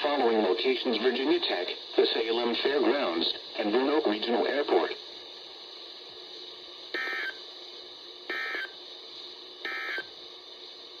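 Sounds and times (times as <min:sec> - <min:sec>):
radio hiss: 0:00.0 - 0:11.0
digital data tone bursts: 0:07.0 - 0:07.4, 0:08.3 - 0:08.8, 0:09.6 - 0:10.1.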